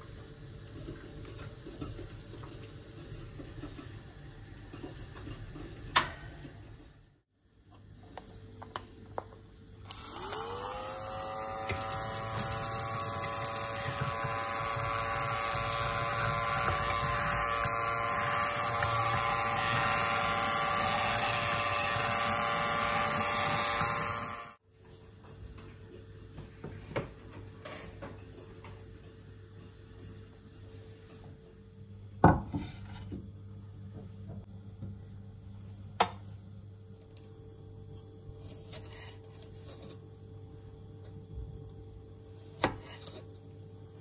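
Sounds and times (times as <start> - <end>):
small electric motor whining: 9.8 - 24.6.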